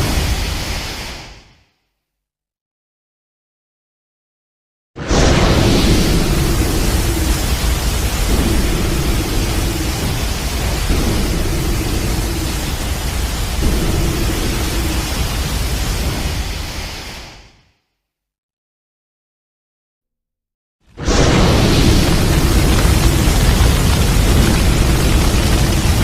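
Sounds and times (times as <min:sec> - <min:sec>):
loud roaring rush of noise: 0:05.1 - 0:17.4, 0:21.0 - 0:26.0.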